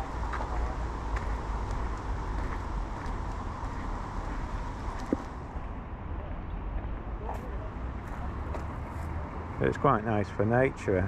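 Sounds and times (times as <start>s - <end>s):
road traffic rumble: 0.0s - 11.0s.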